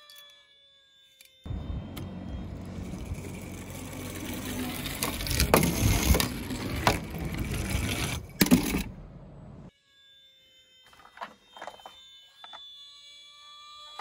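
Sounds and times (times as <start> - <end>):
toy cars rolling on hard surface: 2.6 - 8.9.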